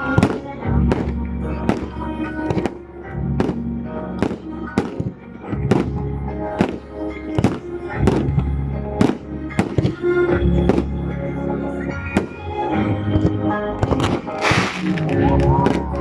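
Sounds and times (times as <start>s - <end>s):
fireworks bangs: 0.0s - 2.7s, 3.4s - 6.0s, 12.1s - 12.5s, 13.2s - 16.0s
music playing: 0.0s - 16.0s.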